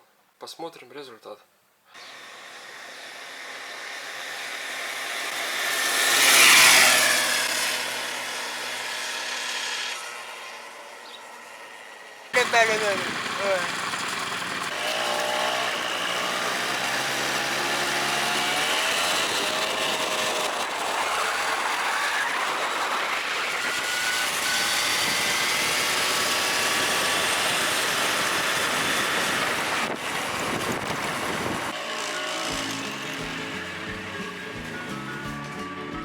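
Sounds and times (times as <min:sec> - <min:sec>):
car engine and road noise: 0:02.0 - 0:35.6.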